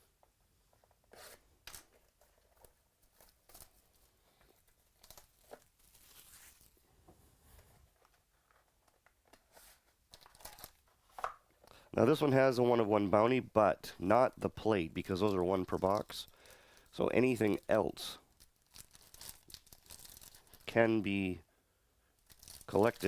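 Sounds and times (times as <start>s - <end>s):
packaging tearing and crinkling: 18.4s - 20.7s, 22.2s - 23.0s.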